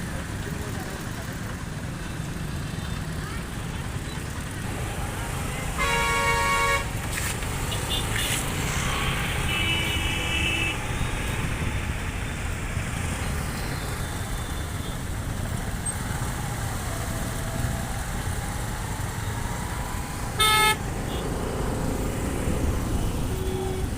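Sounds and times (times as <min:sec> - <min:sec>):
road traffic rumble on bridge: 0:00.0 - 0:23.9
vehicle horn: 0:05.5 - 0:07.0, 0:07.7 - 0:10.8, 0:20.4 - 0:21.2, 0:23.3 - 0:23.9.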